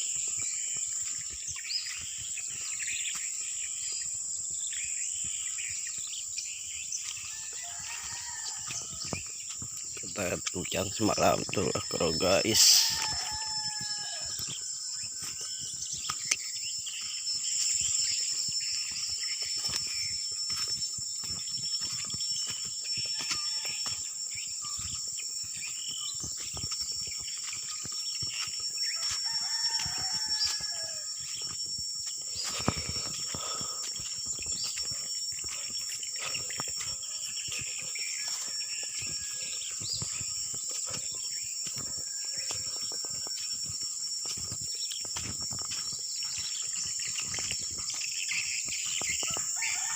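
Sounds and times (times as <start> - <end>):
high-pitched insect drone: 0.0 - 49.9
chickens calling: 7.0 - 17.2, 25.6 - 49.9.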